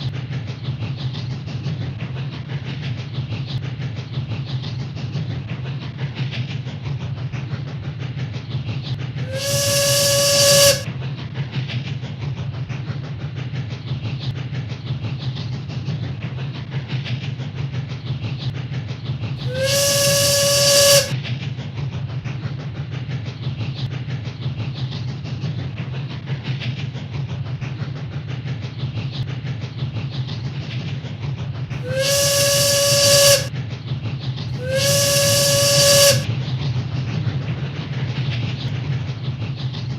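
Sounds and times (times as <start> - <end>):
steam whistle toots: 9.3 - 10.9, 19.4 - 21.2, 31.8 - 33.5, 34.5 - 36.3
train rumbling: 9.3 - 10.9, 19.4 - 21.1, 31.8 - 33.5, 34.5 - 36.3.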